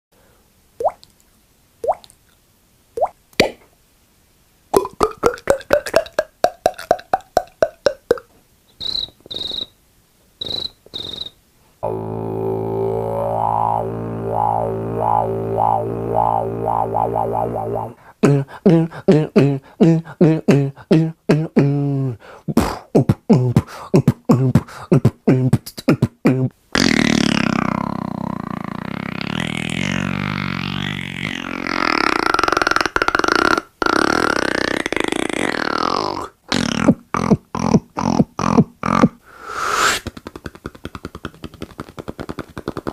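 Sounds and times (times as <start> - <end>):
quick rhythmic vocal pulses: 4.8 - 9.6, 10.4 - 42.9
rapid mouth clicks: 4.8 - 9.7, 22.5 - 27.4, 30.7 - 42.9
hissing whooshing mouth noise: 8.8 - 9.7, 10.4 - 42.9
pulsing buzzing drone: 11.8 - 18.0.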